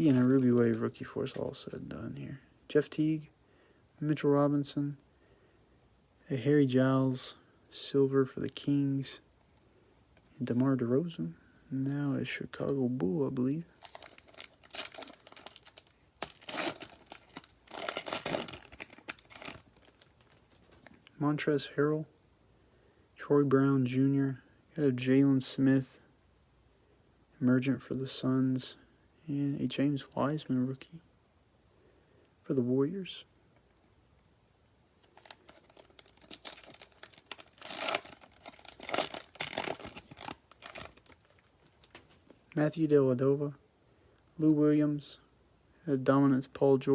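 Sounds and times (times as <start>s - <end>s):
plastic wrapper crinkling: 0.0s - 1.4s, 13.7s - 21.1s, 35.0s - 42.5s.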